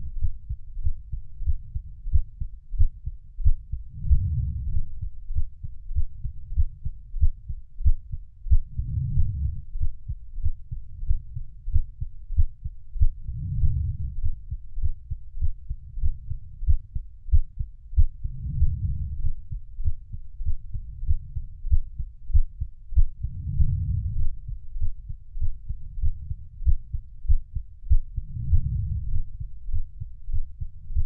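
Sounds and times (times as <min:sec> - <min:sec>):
heartbeat thuds: 0:00.1 - 0:31.0.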